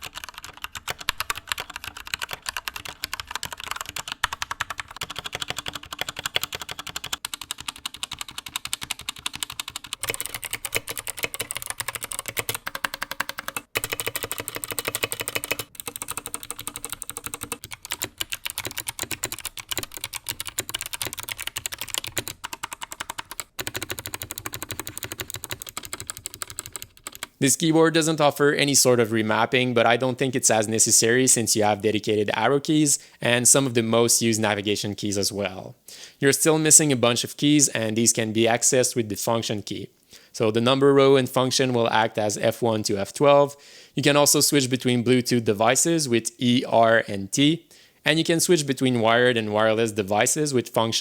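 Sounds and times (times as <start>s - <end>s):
mechanical keyboard typing: 0.0s - 27.4s.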